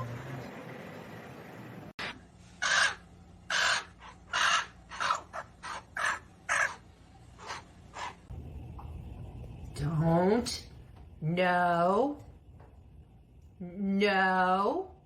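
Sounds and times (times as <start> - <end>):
bird harsh rasping calls: 2.6 - 8.3.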